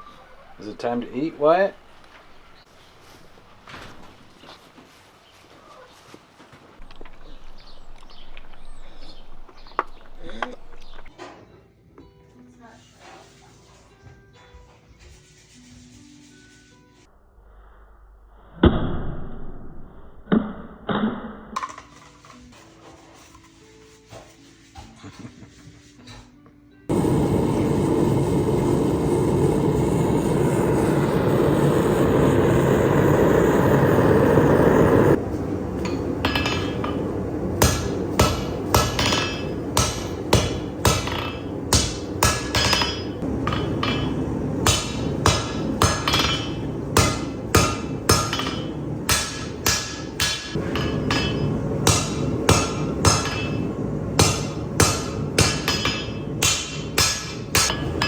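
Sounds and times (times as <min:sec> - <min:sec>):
steady rushing noise: 0:26.9 - 0:58.0
hammer blows on metal anvil: 0:35.8 - 0:58.0.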